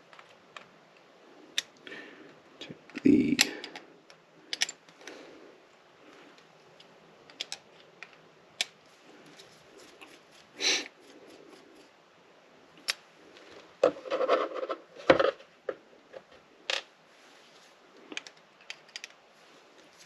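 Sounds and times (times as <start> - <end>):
clicks and taps of small parts: 6.8 - 8.8, 18.1 - 19.2.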